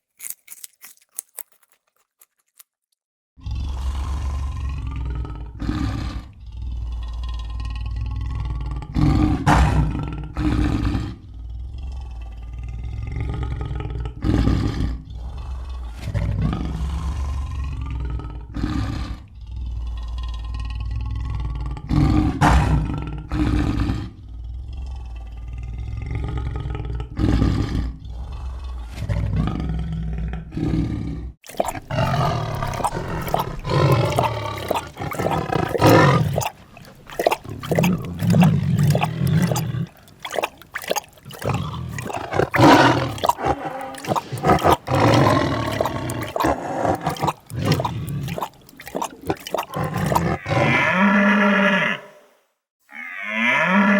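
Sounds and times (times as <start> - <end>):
animal roaring: 3.4 - 52.2
bright animal call: 52.9 - 53.9.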